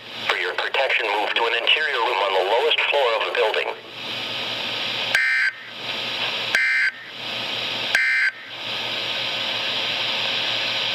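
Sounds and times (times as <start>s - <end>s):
radio hiss: 0.0s - 7.9s.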